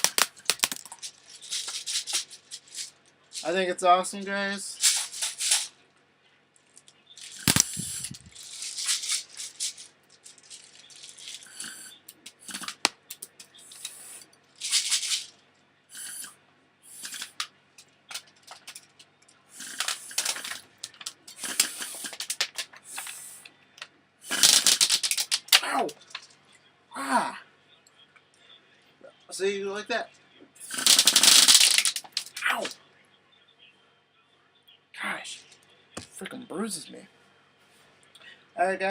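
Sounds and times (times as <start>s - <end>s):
pellets rattling in plastic bottle: 0.0s - 3.6s, 4.8s - 5.7s, 7.2s - 11.8s, 14.6s - 15.3s, 19.6s - 23.2s, 24.3s - 26.3s, 30.6s - 32.4s.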